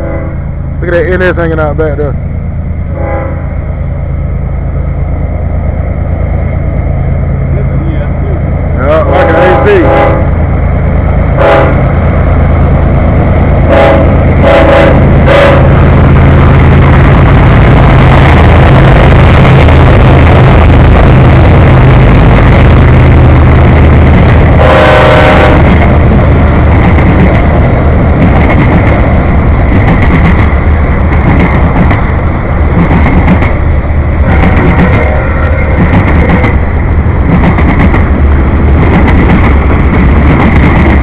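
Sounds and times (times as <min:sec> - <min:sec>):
train air horn: 0:00.0 - 0:00.5, 0:02.9 - 0:03.6, 0:08.9 - 0:10.4, 0:11.4 - 0:11.8, 0:13.7 - 0:15.8, 0:24.6 - 0:25.7, 0:34.9 - 0:36.5
freight train passing: 0:00.0 - 0:41.0.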